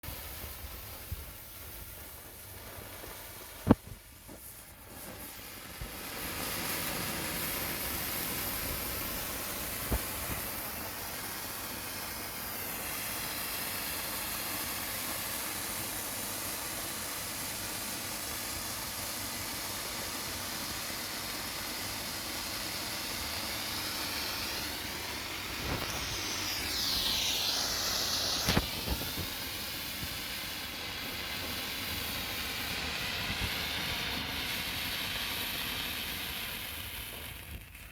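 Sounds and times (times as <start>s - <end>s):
flare igniting snap: 0.0s - 16.2s, 21.4s - 37.9s
flare burning with hiss: 0.0s - 37.9s
small crackles: 37.0s - 37.9s.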